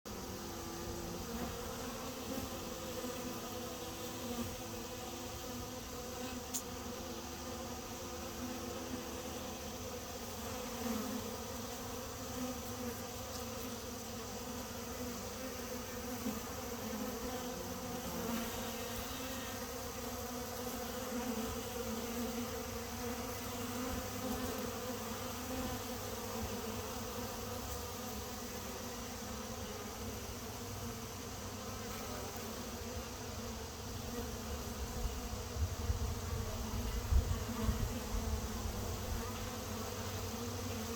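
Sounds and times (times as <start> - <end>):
bees buzzing: 0.1 - 40.9.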